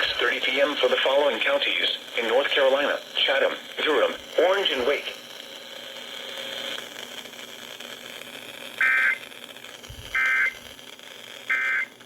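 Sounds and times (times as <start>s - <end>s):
faint radio hiss: 0.0s - 12.0s
buzzing digital data bursts: 10.1s - 10.8s.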